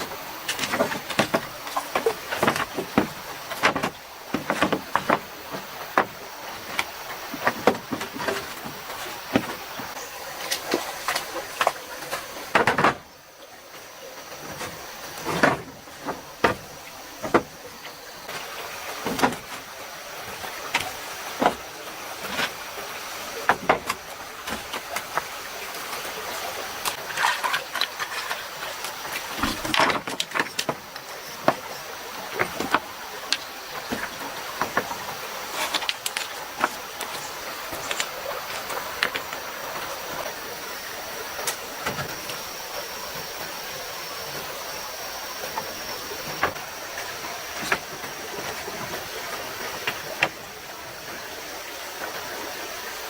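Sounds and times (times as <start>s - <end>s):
stream water running: 0.0s - 53.0s
sharp knocks and taps: 0.5s - 10.0s.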